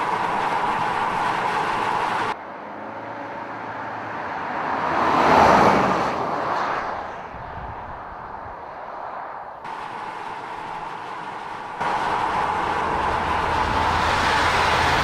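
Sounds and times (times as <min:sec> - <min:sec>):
vehicle passing by: 0:02.3 - 0:09.6, 0:11.8 - 0:15.0
steady rushing noise: 0:06.5 - 0:15.0.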